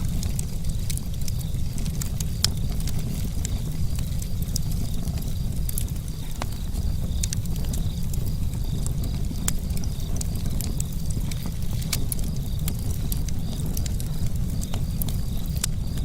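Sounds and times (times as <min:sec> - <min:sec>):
campfire rumble: 0:00.0 - 0:16.0
wood crackling and popping: 0:00.0 - 0:16.0.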